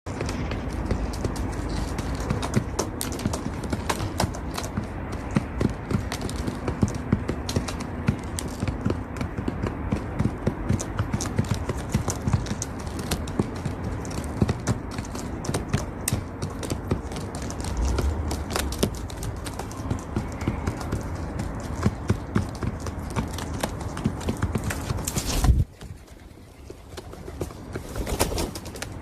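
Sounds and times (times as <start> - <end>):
pigeon pecking on hard floor: 0.1 - 25.4.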